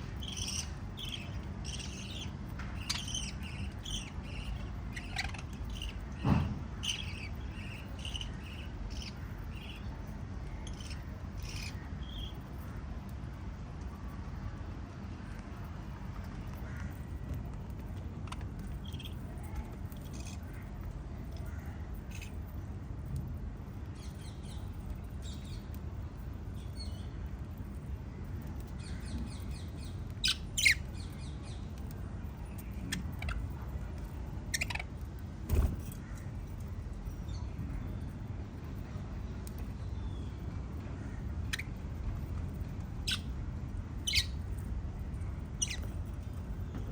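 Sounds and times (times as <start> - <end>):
lovebirds chirping: 0.0 - 12.4, 18.3 - 22.5, 28.4 - 33.7, 34.3 - 38.1, 43.0 - 43.4, 44.0 - 46.8
steady low hum: 0.0 - 46.9
thud: 6.2 - 6.6.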